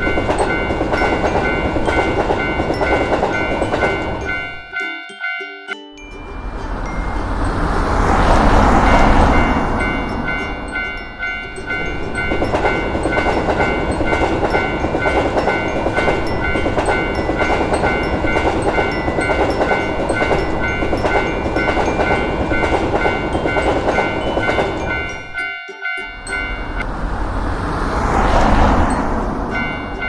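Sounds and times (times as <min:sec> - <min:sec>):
train wheels clattering: 0:00.0 - 0:04.6, 0:06.8 - 0:25.4
level-crossing warning bell ringing: 0:00.0 - 0:26.9, 0:28.4 - 0:30.0.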